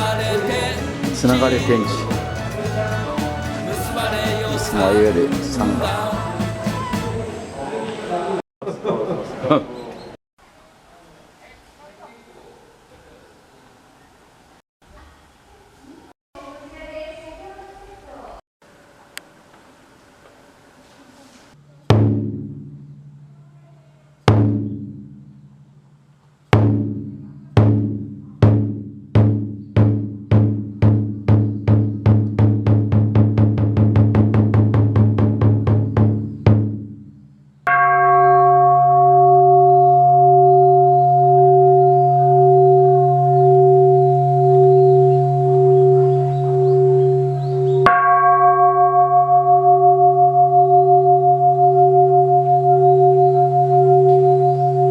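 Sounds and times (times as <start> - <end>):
temple bowl bell ringing: 1.2 - 2.6, 37.7 - 54.9
large temple drum beats: 26.6 - 36.9.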